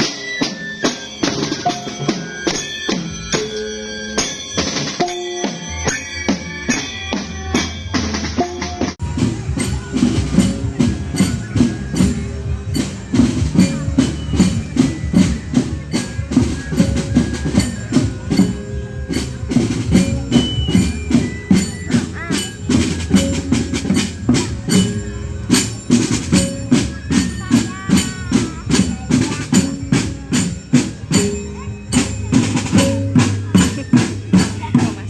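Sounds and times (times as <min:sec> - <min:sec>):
heavy steady drumming: 0:00.0 - 0:35.0
melodic music with drums: 0:00.0 - 0:35.0
held high notes: 0:08.5 - 0:35.0.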